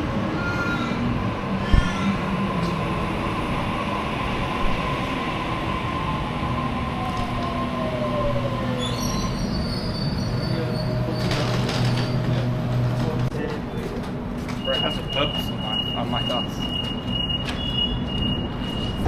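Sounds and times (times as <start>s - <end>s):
high squeal: 8.8s - 11.3s.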